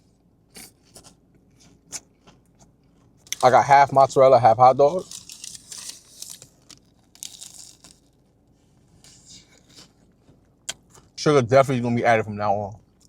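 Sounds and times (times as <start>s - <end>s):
crunchy food chewing: 0.0s - 4.0s, 4.9s - 11.2s.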